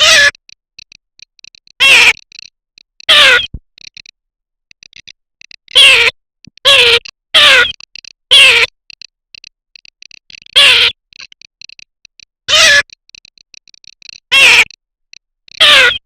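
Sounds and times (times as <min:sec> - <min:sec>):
rapid dry clicking: 0:00.3 - 0:05.8, 0:06.4 - 0:15.6
duck nasal calls: 0:01.8 - 0:02.2, 0:03.1 - 0:03.6, 0:06.7 - 0:08.7, 0:12.5 - 0:12.9, 0:14.3 - 0:14.7, 0:15.6 - 0:16.0.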